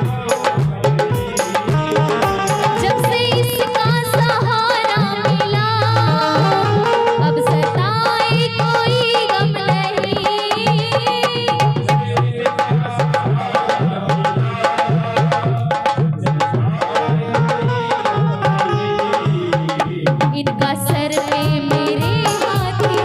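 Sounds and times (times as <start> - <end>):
ornamented melody line: 0.0 - 10.2
hand drum beat: 0.0 - 23.0.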